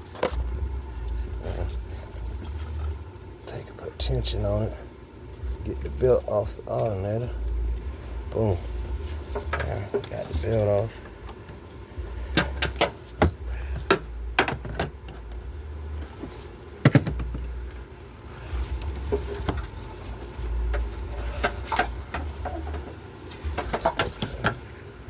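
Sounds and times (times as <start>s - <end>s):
low rumble: 0.0s - 3.2s, 5.4s - 11.2s.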